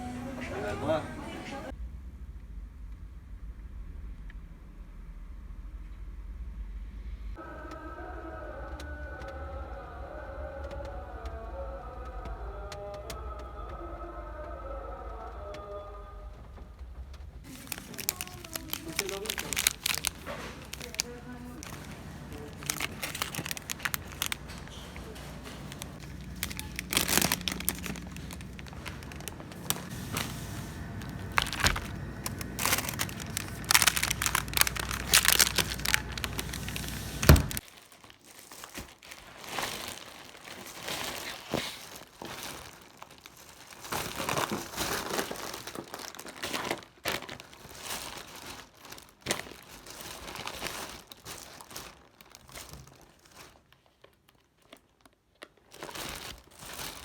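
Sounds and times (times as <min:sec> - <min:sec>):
low background hum: 0:00.0 - 0:55.2
packaging crinkling: 0:17.4 - 0:57.0.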